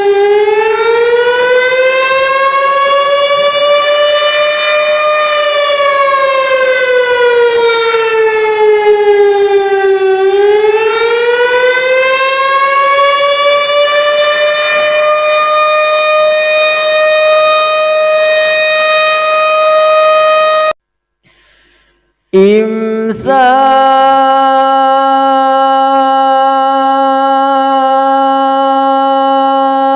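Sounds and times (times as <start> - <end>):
siren wailing: 0.0 - 20.8.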